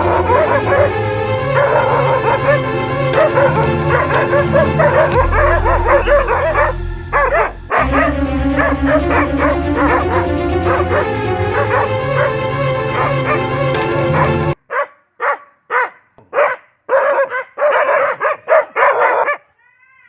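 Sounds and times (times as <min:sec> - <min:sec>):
music: 0:00.0 - 0:14.6.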